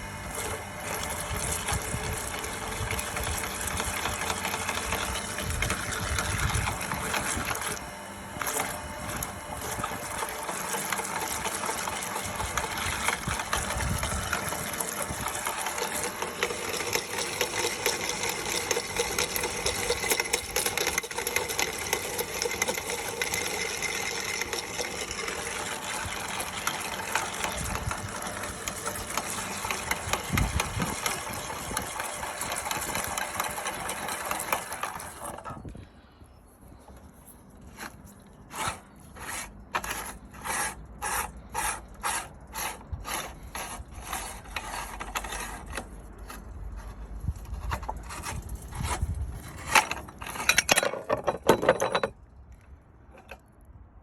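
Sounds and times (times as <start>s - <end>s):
meat grinder motor grinding: 0.0s - 35.8s.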